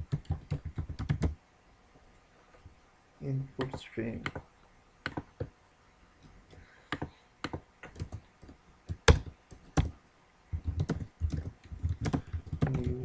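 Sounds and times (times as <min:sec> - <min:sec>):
keyboard typing: 0:00.0 - 0:01.4, 0:03.6 - 0:04.4, 0:05.0 - 0:05.5, 0:06.5 - 0:13.0.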